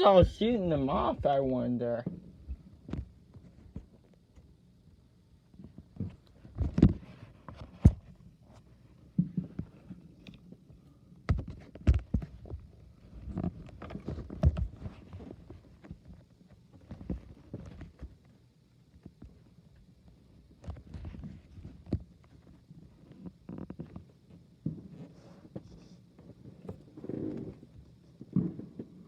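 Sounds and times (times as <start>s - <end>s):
fireworks booming and cracking: 28.3s - 29.0s.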